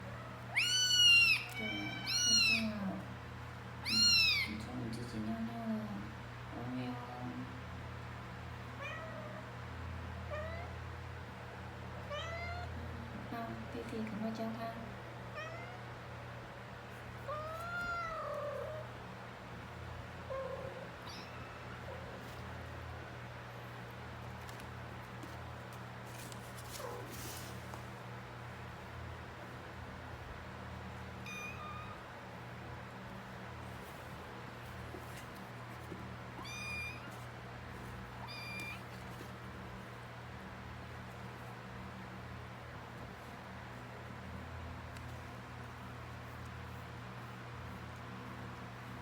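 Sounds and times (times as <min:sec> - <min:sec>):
cat meowing: 0:00.0 - 0:02.9, 0:03.8 - 0:04.6, 0:10.3 - 0:10.7, 0:12.1 - 0:12.7, 0:15.3 - 0:15.8, 0:17.3 - 0:18.9, 0:20.3 - 0:21.9, 0:31.2 - 0:32.0, 0:36.4 - 0:37.2, 0:38.2 - 0:38.8.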